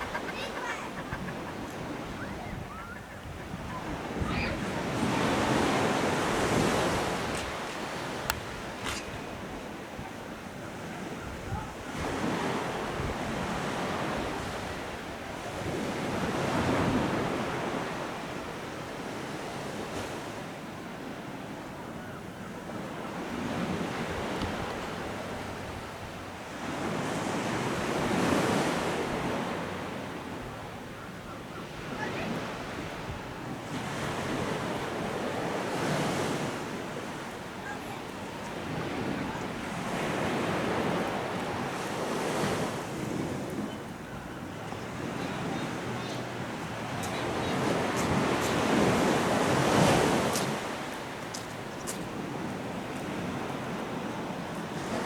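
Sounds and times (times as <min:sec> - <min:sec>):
wind on microphone: 0:00.0 - 0:17.6
sea waves breaking on beach: 0:00.0 - 0:22.0, 0:22.6 - 0:55.0.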